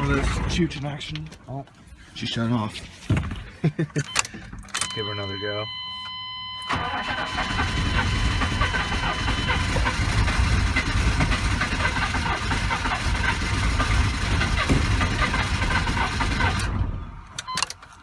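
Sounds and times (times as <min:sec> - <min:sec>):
starter cranking diesel engine: 0:06.7 - 0:16.9.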